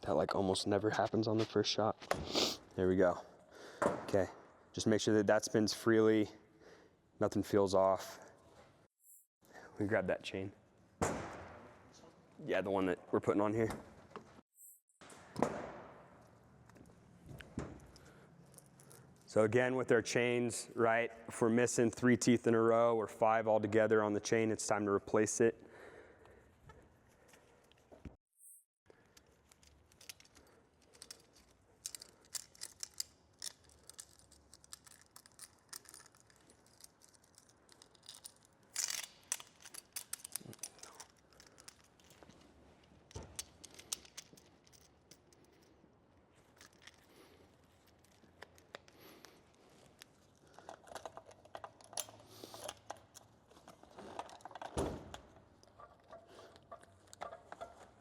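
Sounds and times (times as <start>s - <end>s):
saw chain clicking and rattling: 29.2s - 42.4s.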